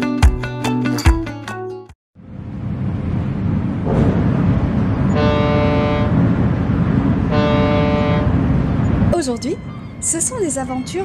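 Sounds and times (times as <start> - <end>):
ship's horn blasts: 5.0 - 11.0.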